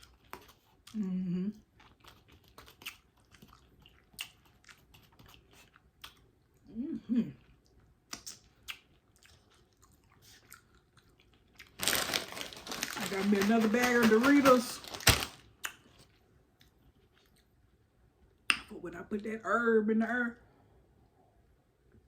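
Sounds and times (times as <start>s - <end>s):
close chewing with mouth clicks: 0.0s - 6.7s, 7.3s - 13.2s, 15.4s - 17.8s
person humming: 1.0s - 1.6s, 6.7s - 7.4s.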